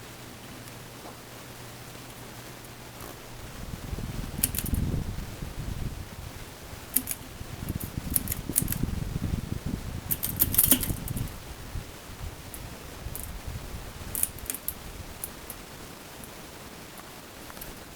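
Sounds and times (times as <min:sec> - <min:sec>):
ceiling fan rumble: 0:00.0 - 0:17.9
metallic clicks and rattles: 0:04.4 - 0:04.9, 0:06.9 - 0:08.8, 0:10.1 - 0:11.3, 0:12.5 - 0:13.4, 0:14.1 - 0:15.6.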